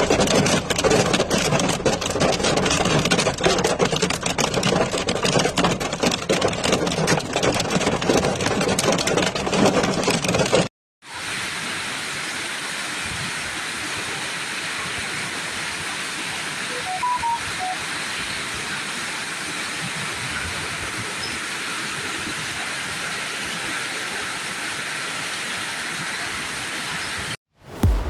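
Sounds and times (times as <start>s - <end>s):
smooth rush of rain and water: 11.0s - 28.0s.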